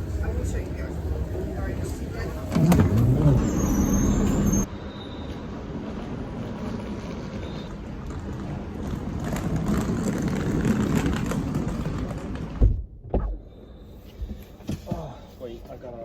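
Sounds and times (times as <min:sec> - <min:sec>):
vehicle traffic passing: 0:00.0 - 0:12.6.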